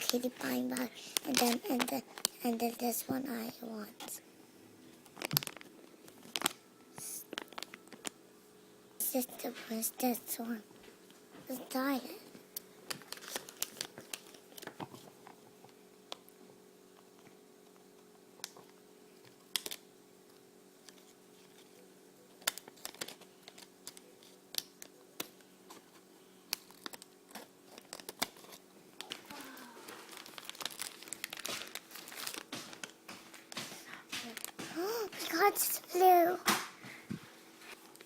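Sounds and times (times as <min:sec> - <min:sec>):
plastic bag tearing and crinkling: 0:00.0 - 0:02.4, 0:05.1 - 0:06.6, 0:12.9 - 0:14.7, 0:26.5 - 0:33.0.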